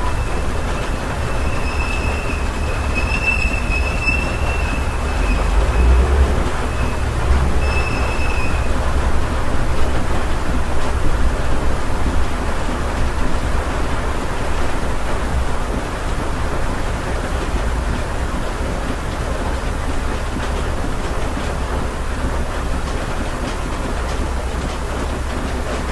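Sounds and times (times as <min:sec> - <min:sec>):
thin high squealing tone: 0:00.0 - 0:09.6
deep rumble: 0:00.0 - 0:18.2
heavy rain: 0:00.0 - 0:25.9.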